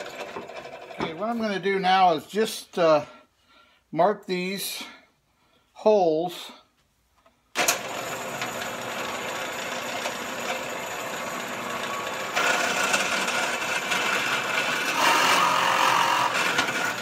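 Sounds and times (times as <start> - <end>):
electric drill into wood: 7.6 - 17.0.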